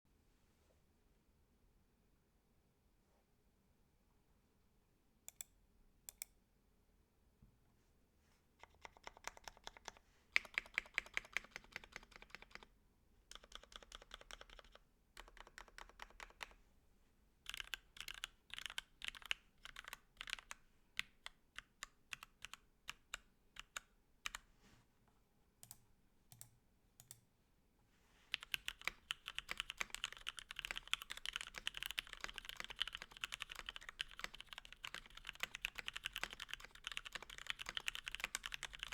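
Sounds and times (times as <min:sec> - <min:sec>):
mechanical keyboard typing: 0:08.6 - 0:12.7, 0:13.3 - 0:16.6, 0:17.5 - 0:24.4, 0:28.3 - 0:38.9.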